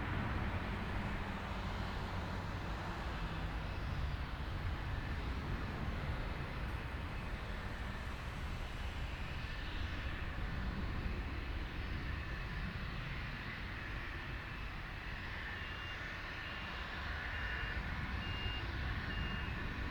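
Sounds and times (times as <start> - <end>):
jet engine whine and rumble: 0.0 - 19.9
vehicle reversing beeper: 17.4 - 19.8.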